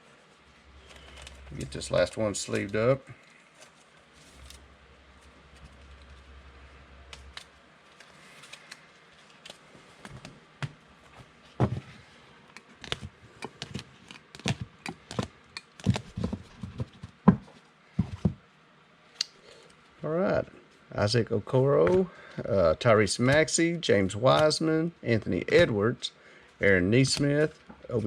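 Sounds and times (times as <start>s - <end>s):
cards and plastic sleeves rustling: 0.7s - 6.3s, 7.1s - 10.4s, 12.7s - 17.2s, 21.6s - 28.0s
cards tapping and clicking: 12.5s - 17.4s.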